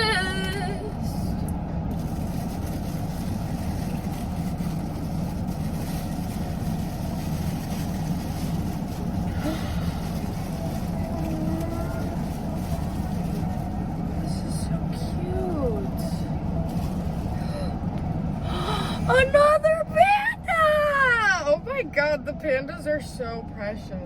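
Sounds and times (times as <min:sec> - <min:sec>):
road and engine rumble: 0:00.0 - 0:24.0
faint voices: 0:09.3 - 0:24.0.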